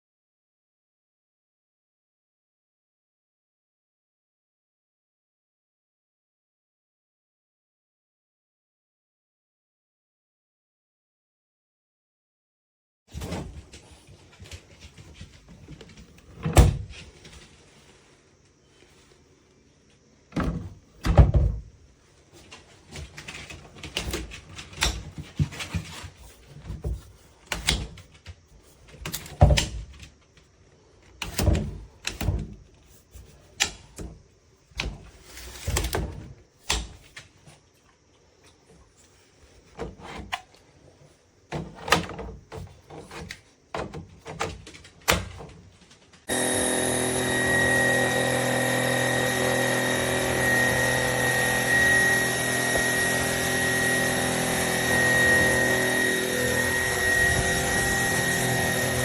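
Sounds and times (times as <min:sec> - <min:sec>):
vacuum motor whining: 0:46.3 - 0:59.0.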